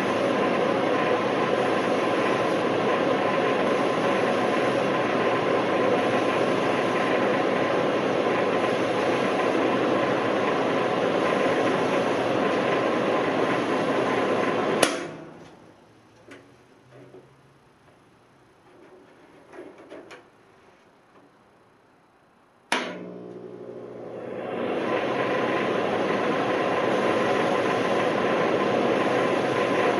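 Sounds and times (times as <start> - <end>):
welder transformer hum: 0.0 - 20.2, 20.8 - 29.9
power switch click: 22.7 - 23.1.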